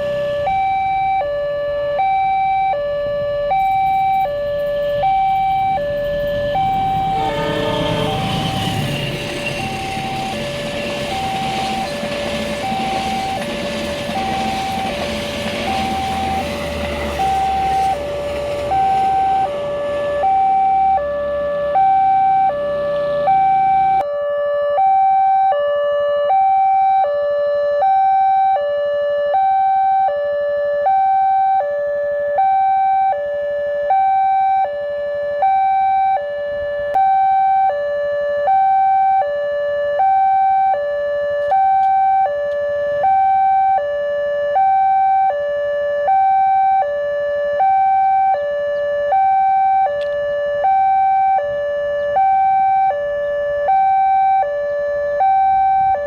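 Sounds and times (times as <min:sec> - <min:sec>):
passing train rumble: 0:00.0 - 0:01.5, 0:04.2 - 0:24.0
level crossing two-tone alarm: 0:00.0 - 0:56.0.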